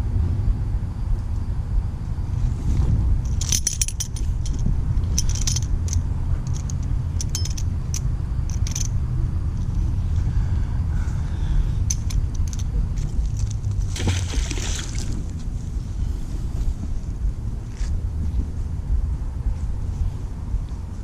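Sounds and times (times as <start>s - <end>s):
steady low rumble: 0.0s - 21.0s
metal clinking and rattling: 3.2s - 9.9s, 11.8s - 13.7s.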